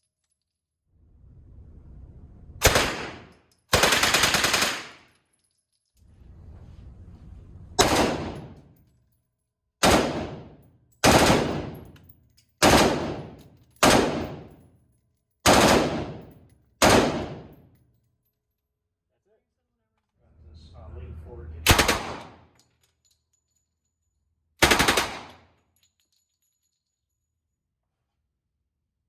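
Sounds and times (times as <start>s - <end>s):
gunshots: 2.6s - 5.1s, 7.8s - 8.7s, 9.8s - 11.9s, 12.6s - 14.5s, 15.5s - 17.6s, 21.6s - 22.5s, 24.6s - 25.4s.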